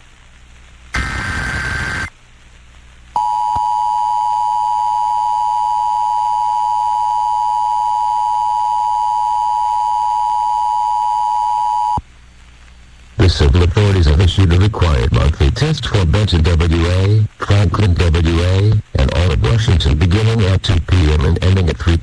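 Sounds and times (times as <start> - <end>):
harsh data screech: 1.0 - 2.1.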